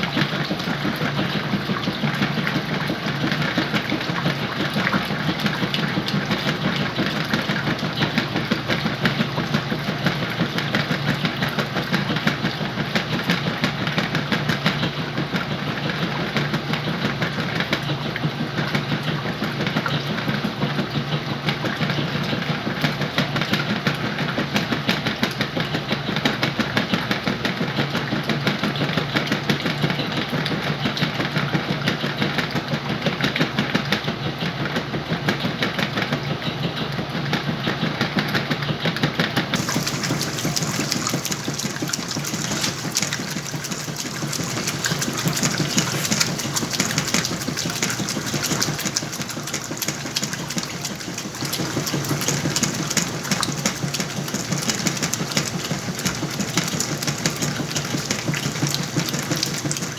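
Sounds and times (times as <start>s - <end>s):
washing machine churning: 0.0s - 22.8s, 39.6s - 59.9s.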